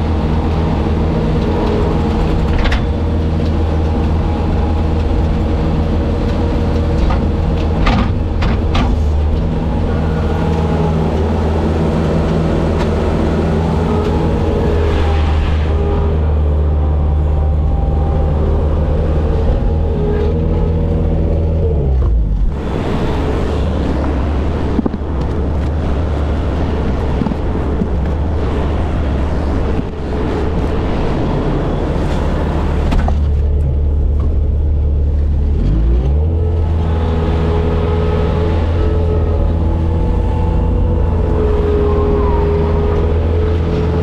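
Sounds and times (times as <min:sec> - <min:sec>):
diesel engine running: 0:00.0 - 0:44.0.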